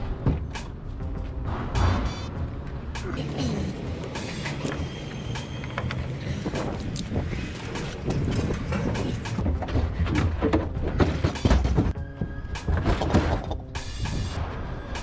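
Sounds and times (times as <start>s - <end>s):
music: 0.0s - 15.0s
scrap metal clanking: 4.1s - 11.9s.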